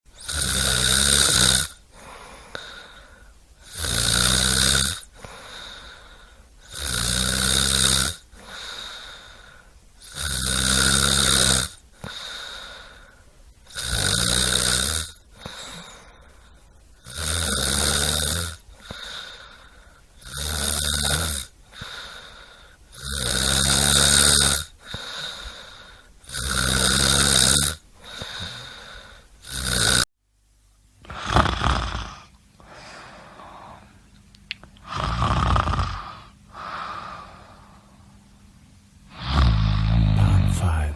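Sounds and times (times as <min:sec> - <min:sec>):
person snoring: 0:00.2 - 0:06.1, 0:06.7 - 0:09.4, 0:10.0 - 0:13.0, 0:13.7 - 0:16.1, 0:17.0 - 0:19.6, 0:20.2 - 0:30.1, 0:31.0 - 0:33.9, 0:34.8 - 0:37.9, 0:39.1 - 0:40.9
quiet breathing: 0:01.8 - 0:03.7, 0:05.0 - 0:06.8, 0:08.3 - 0:09.9, 0:11.9 - 0:13.6, 0:15.2 - 0:17.1, 0:18.6 - 0:20.2, 0:21.6 - 0:22.9, 0:24.8 - 0:26.3, 0:27.9 - 0:29.4, 0:32.1 - 0:34.2, 0:35.9 - 0:38.4.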